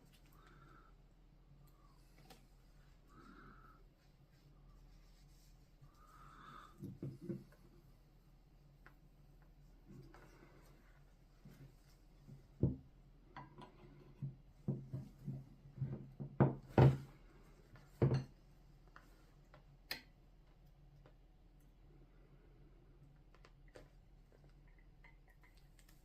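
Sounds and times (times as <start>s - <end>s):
tools knocking on a workbench: 16.0s - 17.1s.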